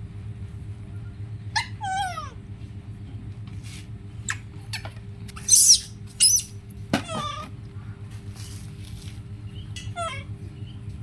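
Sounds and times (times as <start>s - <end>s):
steady low hum: 0.0s - 11.0s
monkeys squeaking and chirping: 4.3s - 7.4s.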